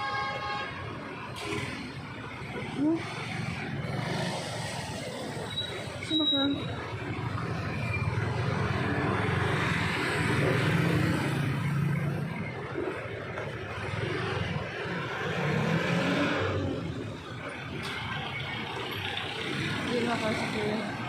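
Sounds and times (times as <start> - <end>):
vehicle engines and tyre noise: 0.0 - 21.0.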